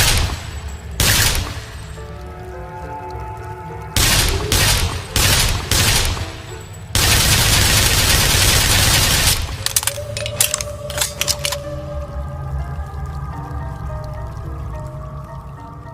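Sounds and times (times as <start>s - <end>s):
submachine gun firing bursts: 0.0s - 1.7s, 4.0s - 9.8s.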